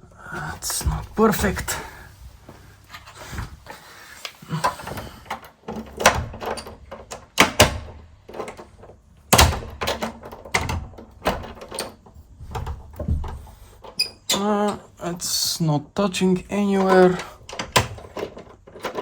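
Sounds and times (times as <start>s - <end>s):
lock hardware knocks and clunks: 4.6s - 14.4s, 16.6s - 19.0s.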